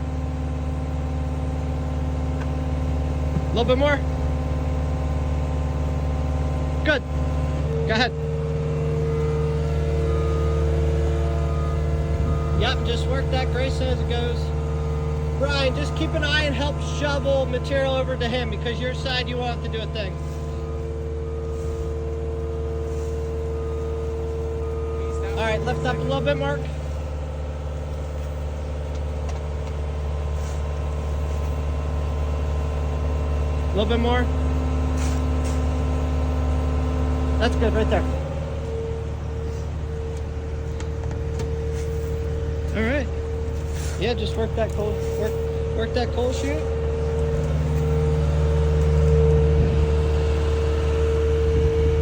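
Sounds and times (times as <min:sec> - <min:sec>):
heavy vehicle engine running: 0:00.0 - 0:52.0
steady high whine: 0:02.8 - 0:29.4.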